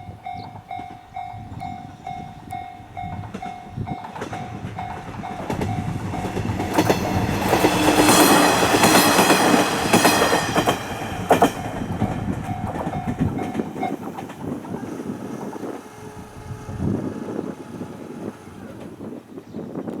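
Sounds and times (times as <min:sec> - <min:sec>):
level-crossing bell ringing: 0:00.0 - 0:14.2
diesel railcar passing: 0:00.0 - 0:19.7
train wheels clacking over rail joints: 0:00.2 - 0:19.2.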